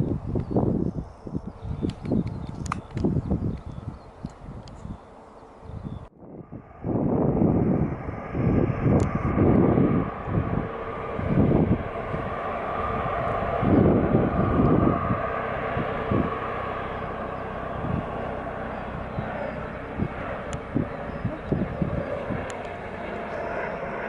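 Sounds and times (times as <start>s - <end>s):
jet airliner engines running: 0.0s - 24.0s
high engine whine: 6.2s - 24.0s.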